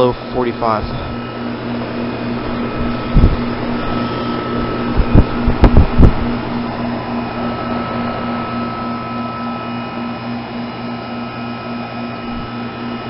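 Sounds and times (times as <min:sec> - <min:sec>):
heat pump compressor hum and fan: 0:00.0 - 0:13.0
dull low thumps: 0:02.4 - 0:04.0, 0:04.7 - 0:07.4.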